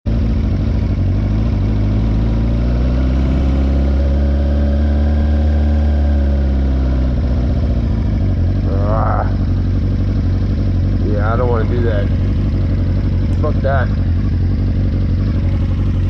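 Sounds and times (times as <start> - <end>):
motorcycle engine running: 0.0 - 16.0.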